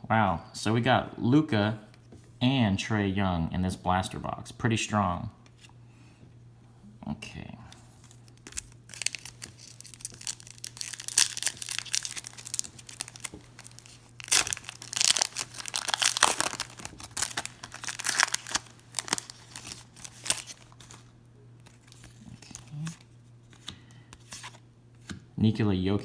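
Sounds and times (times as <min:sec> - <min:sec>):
wrapper tearing and crinkling: 0:08.0 - 0:23.0.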